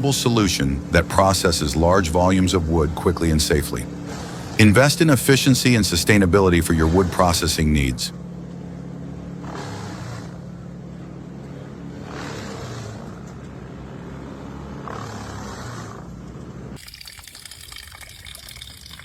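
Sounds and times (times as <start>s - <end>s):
wood shredder engine drone: 0.0s - 12.1s.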